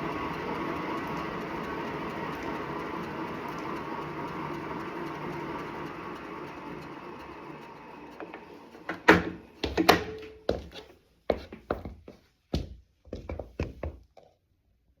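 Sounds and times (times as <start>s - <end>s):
bike drive whirring: 0.0s - 9.3s
sharp knocks and clunks: 8.9s - 10.7s.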